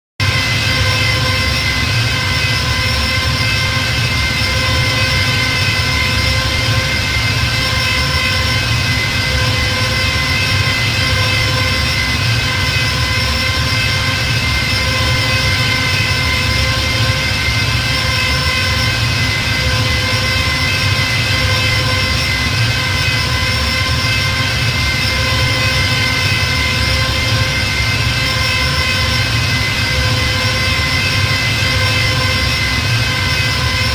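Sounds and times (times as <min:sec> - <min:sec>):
spaceship engine hum with whine: 0:00.2 - 0:33.9.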